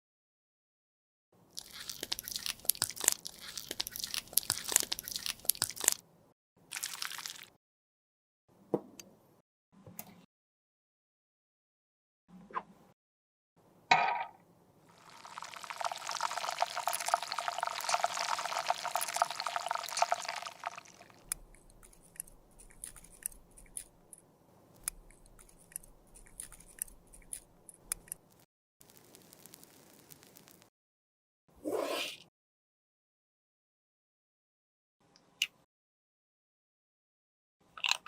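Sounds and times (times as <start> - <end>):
crackling pouring of powder: 1.6 - 6.0, 6.7 - 7.5, 14.9 - 23.4, 28.3 - 30.7.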